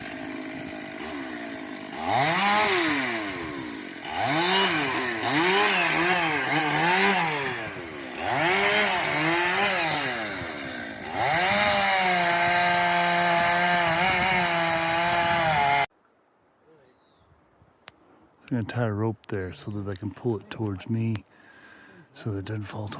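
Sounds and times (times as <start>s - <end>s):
chainsaw revving: 0.0s - 15.9s.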